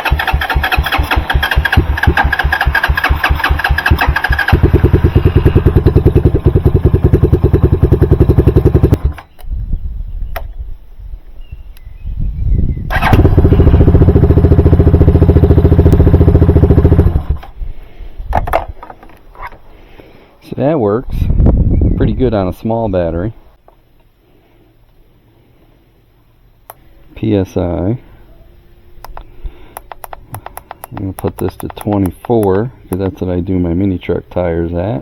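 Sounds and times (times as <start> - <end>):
vehicle engine running: 0.0 - 9.2, 12.9 - 17.5
starter motor cranking engine: 0.0 - 9.3, 12.9 - 17.5.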